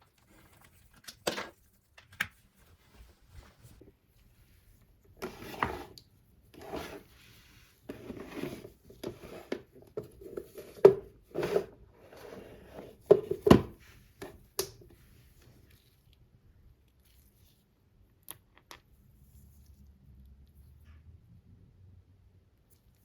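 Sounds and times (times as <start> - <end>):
scraping and rubbing on work surface: 5.2 - 6.0, 6.6 - 14.4.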